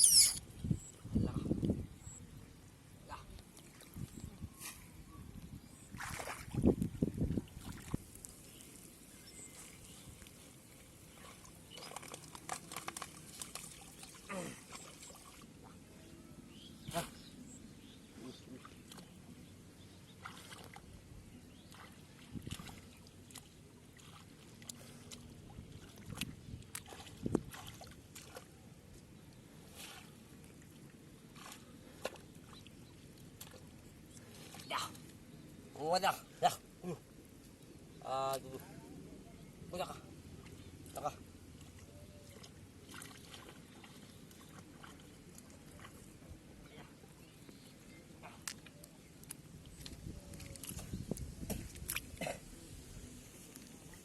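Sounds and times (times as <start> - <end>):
hands splashing in muddy water: 5.9 - 6.8, 20.2 - 20.9, 21.7 - 28.5, 41.6 - 46.1, 48.4 - 52.4.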